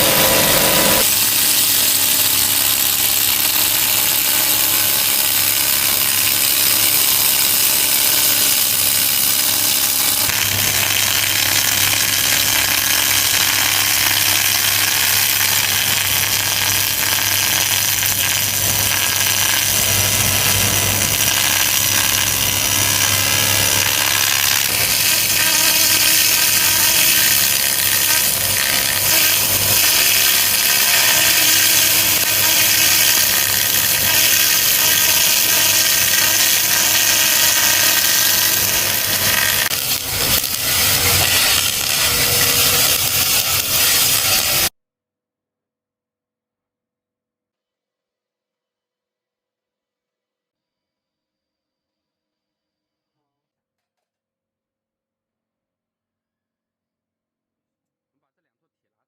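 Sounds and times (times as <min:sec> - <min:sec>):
laser cleaning machine hissing buzz: 0:00.0 - 0:44.7.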